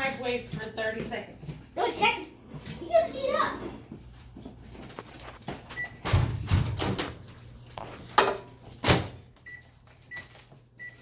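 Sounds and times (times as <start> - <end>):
keypad beeps: 5.8 - 6.0, 9.4 - 11.0.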